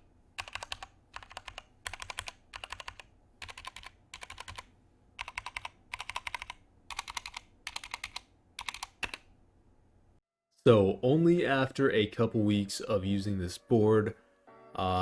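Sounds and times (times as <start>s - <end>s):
mechanical keyboard typing: 0.4s - 9.3s.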